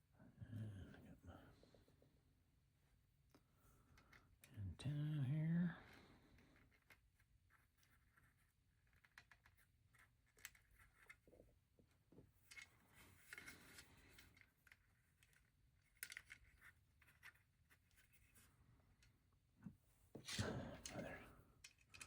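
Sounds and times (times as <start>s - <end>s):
plastic bricks clicking and rustling: 12.4s - 17.4s, 21.6s - 22.0s.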